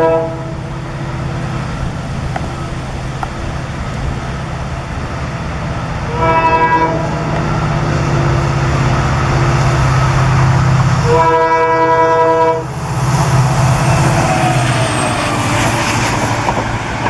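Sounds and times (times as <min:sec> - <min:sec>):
diesel locomotive horn: 0:00.0 - 0:02.0, 0:06.0 - 0:16.2
diesel engine rumble: 0:00.3 - 0:06.1.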